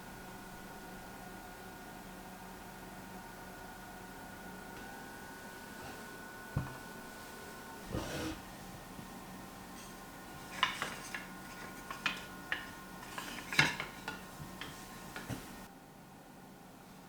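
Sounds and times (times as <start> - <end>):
hard objects clinking and knocking: 10.4 - 15.6.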